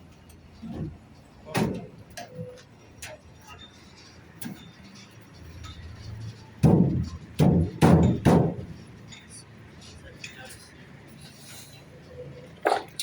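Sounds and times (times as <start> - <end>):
knocks and taps of building work: 6.6 - 8.7.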